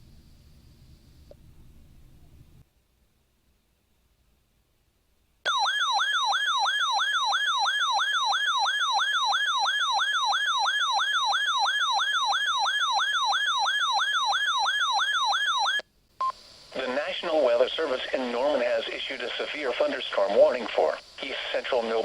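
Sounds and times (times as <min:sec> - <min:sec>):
electronic siren alert tone: 0:05.5 - 0:15.8.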